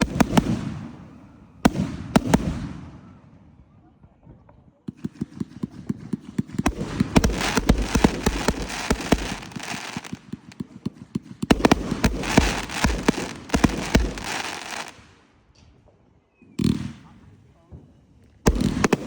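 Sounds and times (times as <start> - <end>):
fireworks bangs: 0.0 - 2.9, 4.9 - 15.2, 18.5 - 19.0
fireworks crackling hiss: 6.7 - 10.6, 11.5 - 15.2.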